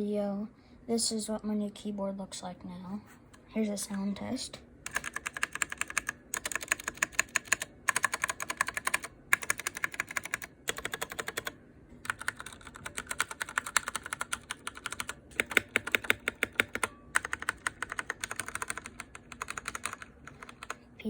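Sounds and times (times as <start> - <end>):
mechanical keyboard typing: 4.8 - 20.8.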